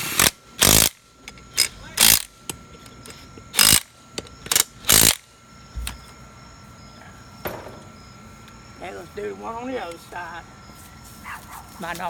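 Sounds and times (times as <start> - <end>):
impact wrench bursts: 0.0 - 6.0
clicks of tool and metal: 0.2 - 5.2.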